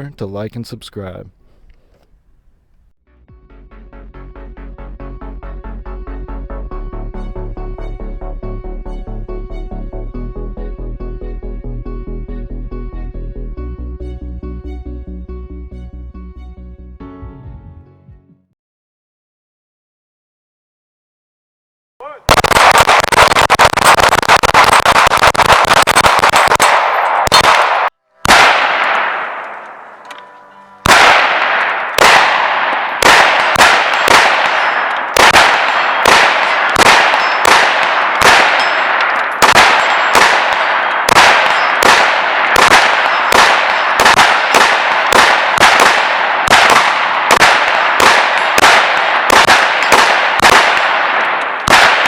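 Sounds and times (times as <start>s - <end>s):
rifle shots: 22.3s - 30.2s, 30.8s - 52.0s
steel targets clanging: 33.8s - 35.9s, 37.0s - 37.5s, 38.4s - 41.8s, 42.9s - 43.9s.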